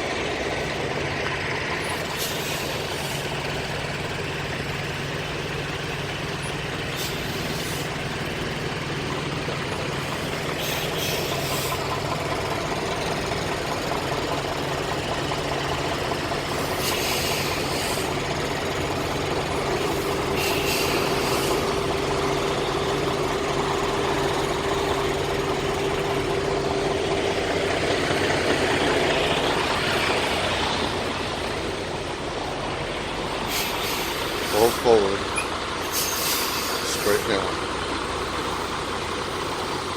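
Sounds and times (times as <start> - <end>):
diesel truck engine running: 0.0 - 39.9
short air hisses: 6.9 - 7.9, 16.6 - 18.1, 19.9 - 21.7, 33.5 - 34.8, 35.8 - 37.2.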